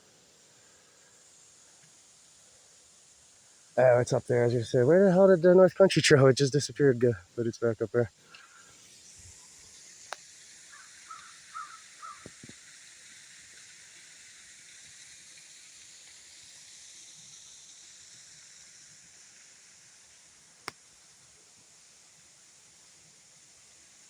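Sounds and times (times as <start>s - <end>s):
steady high hiss: 0.0s - 24.0s
bird calls: 10.7s - 12.4s.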